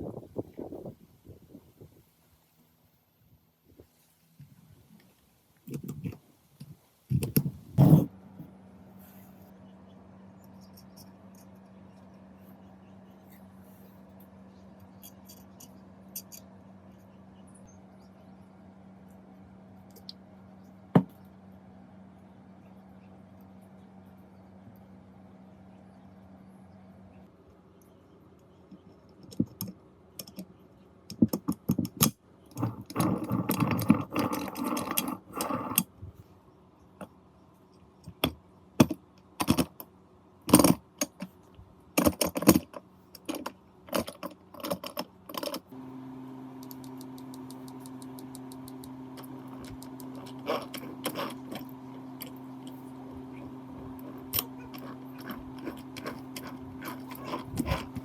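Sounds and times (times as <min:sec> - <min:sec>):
metal parts clinking and scraping: 0:14.8 - 0:16.5, 0:42.0 - 0:45.7, 0:49.2 - 0:52.4, 0:53.4 - 0:58.0
steady machine hum: 0:45.2 - 0:58.0.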